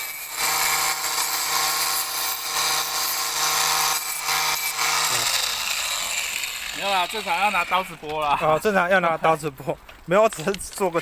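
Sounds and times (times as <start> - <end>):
power tool grinding: 0.0 - 8.3.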